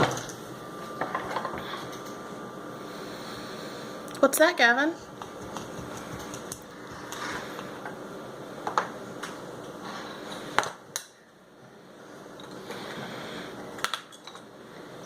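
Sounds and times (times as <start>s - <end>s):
room noise: 0.0s - 15.0s.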